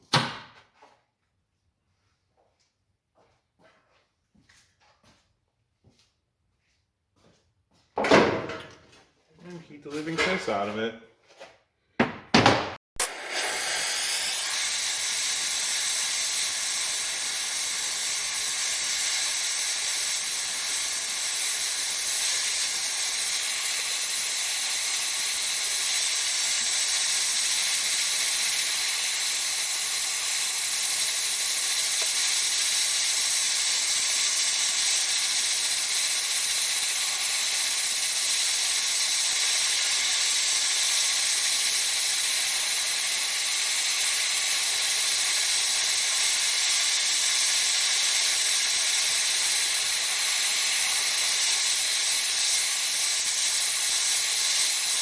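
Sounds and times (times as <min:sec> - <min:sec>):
welder hissing: 0:13.0 - 0:55.0.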